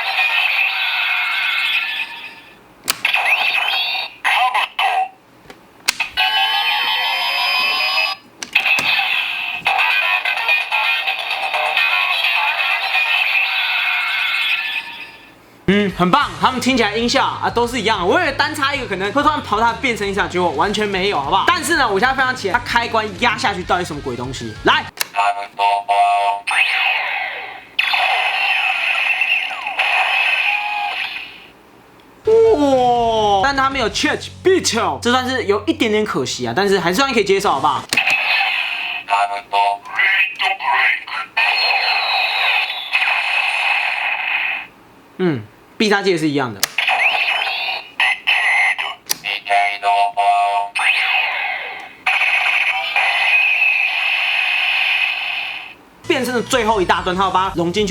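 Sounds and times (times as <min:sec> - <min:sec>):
toy electronic sound effects: 0:00.0 - 0:05.2, 0:05.9 - 0:15.4, 0:25.0 - 0:31.5, 0:37.8 - 0:44.7, 0:46.6 - 0:57.4
plastic switch clicks: 0:02.8 - 0:03.1, 0:05.5 - 0:06.2, 0:46.6 - 0:46.8, 0:49.0 - 0:49.3.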